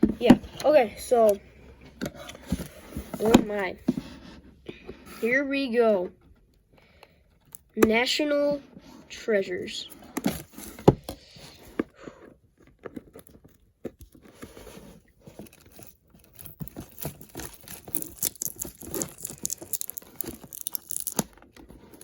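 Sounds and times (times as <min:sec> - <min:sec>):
plastic wrap tearing and crinkling: 0:15.3 - 0:22.0.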